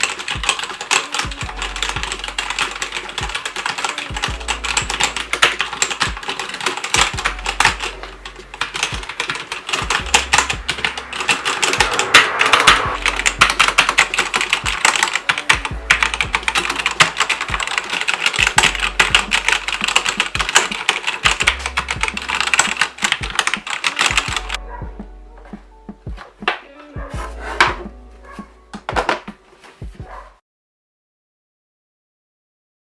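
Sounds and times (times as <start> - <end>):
fast typing on mechanical keyboard: 0.0 - 11.9, 13.0 - 24.6.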